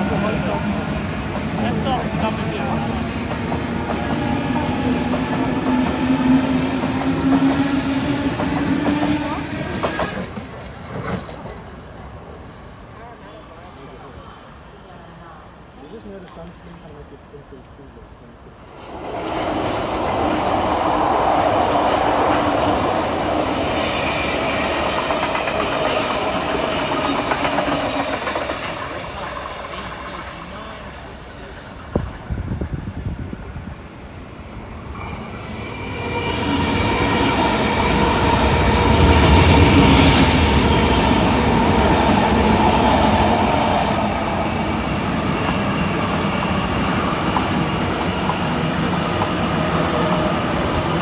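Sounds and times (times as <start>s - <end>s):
wheels clacking on rails: 0.0s - 11.8s, 18.7s - 51.0s
train wheels rumbling: 0.0s - 13.6s, 18.5s - 51.0s
wheels clicking over rail joints: 24.3s - 30.9s.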